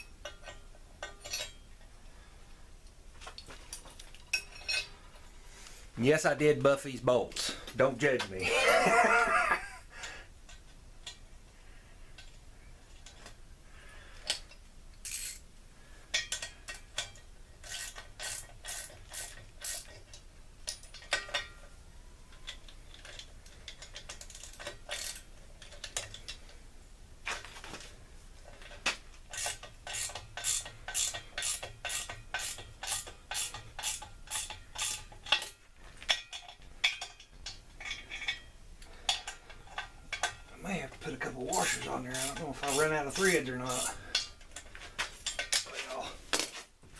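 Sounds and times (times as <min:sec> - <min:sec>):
ratchet wrench clicking: 0:15.0 - 0:15.4, 0:16.1 - 0:20.0, 0:23.1 - 0:26.2, 0:29.3 - 0:35.5, 0:41.6 - 0:44.3.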